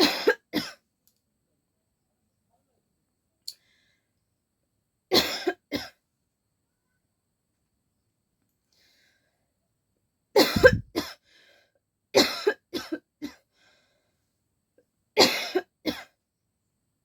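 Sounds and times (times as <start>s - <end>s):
person coughing: 10.4s - 11.2s, 15.2s - 16.1s.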